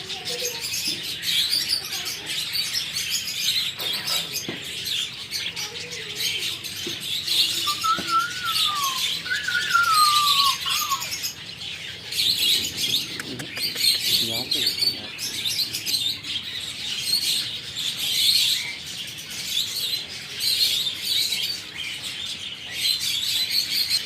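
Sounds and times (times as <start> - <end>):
small birds chirping: 0.0 - 24.0
whistled bird calls falling in pitch: 7.4 - 11.3.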